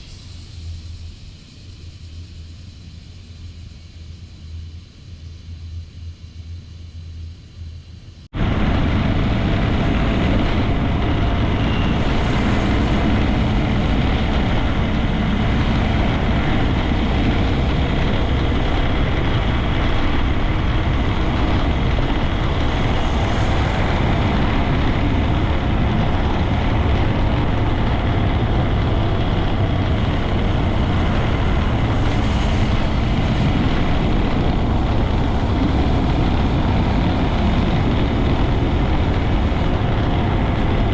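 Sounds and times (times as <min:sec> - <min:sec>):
low hum: 0:00.0 - 0:40.9
motorcycle engine running: 0:08.4 - 0:40.9.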